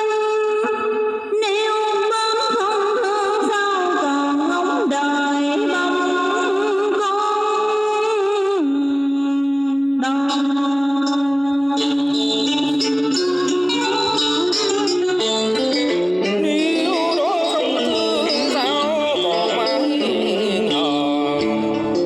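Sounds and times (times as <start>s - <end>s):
ornamented vocal melody: 11.2s - 15.5s, 16.3s - 22.0s.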